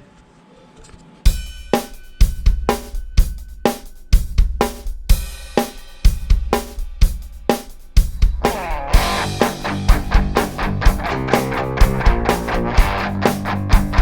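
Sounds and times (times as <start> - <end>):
drum kit playing steady beat: 1.2 - 14.0.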